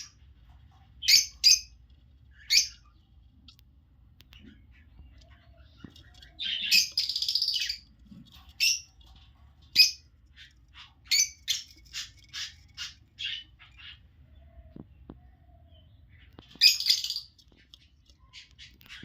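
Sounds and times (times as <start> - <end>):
budgerigars chirping: 1.0 - 3.6, 4.3 - 7.8, 8.4 - 14.7.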